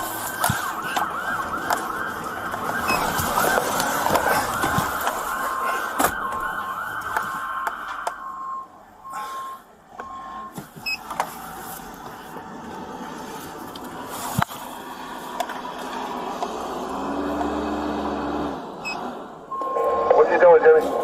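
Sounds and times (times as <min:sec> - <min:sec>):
vehicle noise: 0:00.0 - 0:21.0
short electronic beeps: 0:08.2 - 0:11.0, 0:18.8 - 0:20.4.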